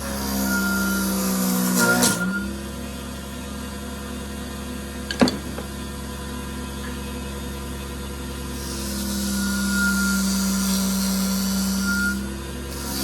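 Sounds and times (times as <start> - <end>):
turning tool cutting wood: 0.0 - 2.4, 8.4 - 13.0
wood lathe humming: 0.0 - 13.0.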